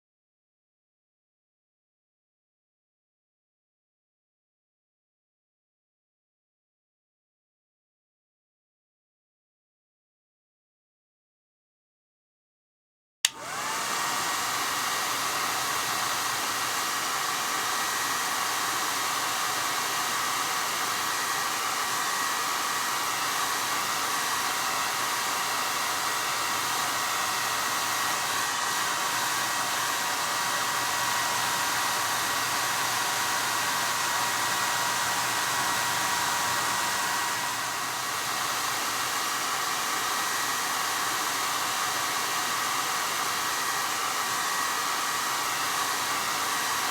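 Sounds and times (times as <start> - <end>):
hair dryer whine and air rush: 13.2 - 46.9
hair dryer switch click: 13.3 - 14.0.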